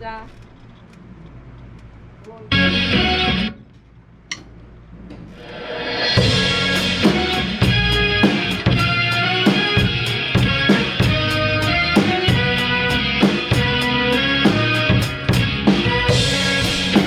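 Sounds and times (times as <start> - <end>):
electric guitar chords: 2.5 - 3.6, 5.5 - 17.0
drum beat: 5.4 - 17.0.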